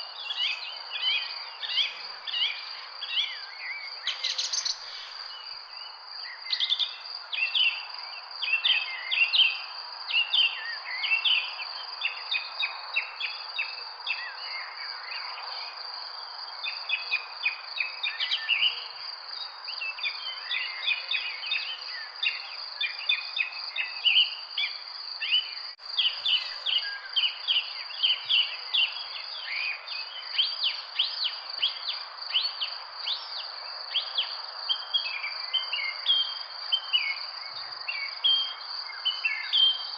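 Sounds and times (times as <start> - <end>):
birds chirping: 25.3 - 29.0.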